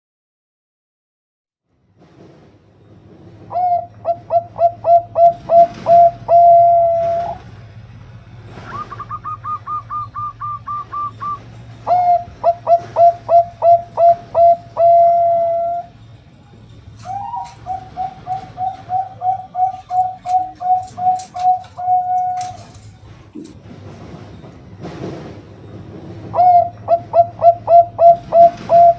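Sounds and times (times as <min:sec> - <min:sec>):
dove cooing: 0:03.5 - 0:07.4, 0:08.6 - 0:16.0, 0:17.0 - 0:22.9, 0:26.4 - 0:28.9
high fast bird notes: 0:08.6 - 0:16.0, 0:17.0 - 0:22.7.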